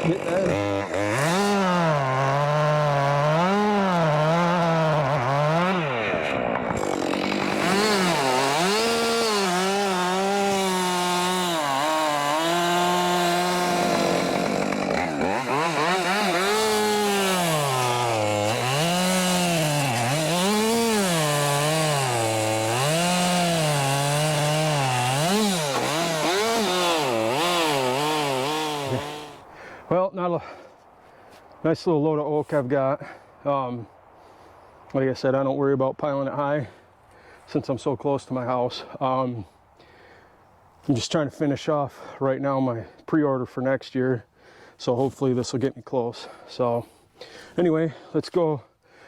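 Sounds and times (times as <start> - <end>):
chainsaw cutting wood: 0.0 - 29.7.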